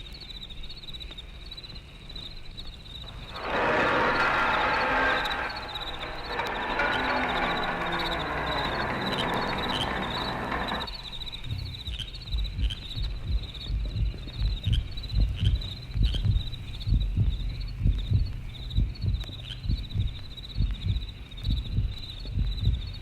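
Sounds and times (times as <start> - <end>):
crickets chirping: 0.0 - 23.0
low thuds: 3.0 - 23.0.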